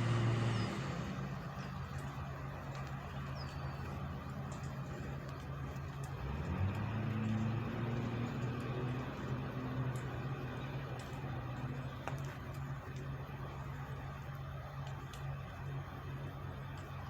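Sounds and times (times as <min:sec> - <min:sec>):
vehicle engine running: 0:00.0 - 0:17.0.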